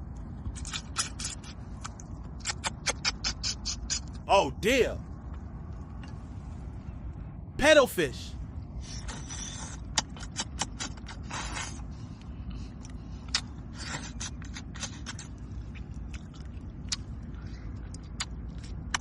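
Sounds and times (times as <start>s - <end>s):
steady low rumble: 4.2s - 8.8s.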